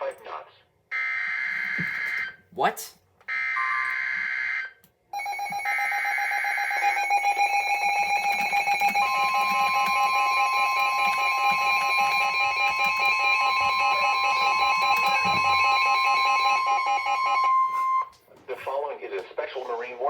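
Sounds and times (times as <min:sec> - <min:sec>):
pulsing alert tones: 0:05.2 - 0:18.1
steady warning tone: 0:05.2 - 0:18.2.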